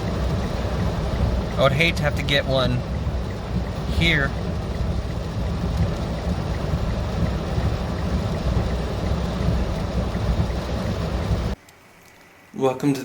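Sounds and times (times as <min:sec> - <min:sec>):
car driving in heavy rain: 0:00.0 - 0:11.6.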